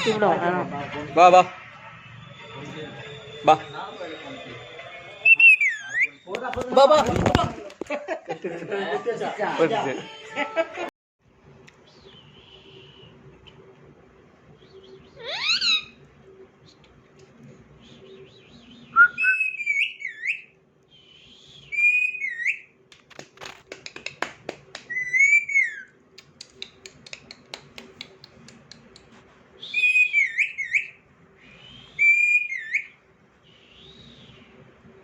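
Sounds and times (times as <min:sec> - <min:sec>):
parrot whistling: 0:02.2 - 0:06.3, 0:14.7 - 0:16.0, 0:18.6 - 0:22.7, 0:24.9 - 0:26.0, 0:29.6 - 0:33.0
parrot clicking: 0:22.9 - 0:25.1, 0:26.2 - 0:29.2.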